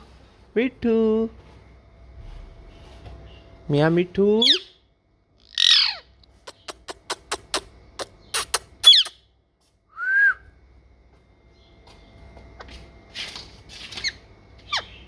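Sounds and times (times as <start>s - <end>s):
parrot clicking: 6.5s - 9.1s
parrot whistled squeaks: 8.4s - 9.2s.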